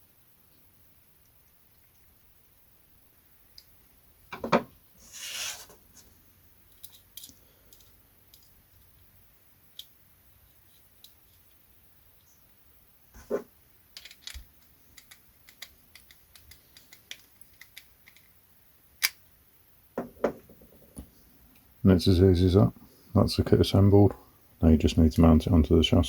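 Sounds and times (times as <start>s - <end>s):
small parts clicking: 6.7s - 9.0s, 9.7s - 10.0s, 10.6s - 11.6s, 13.9s - 18.4s, 19.0s - 19.3s.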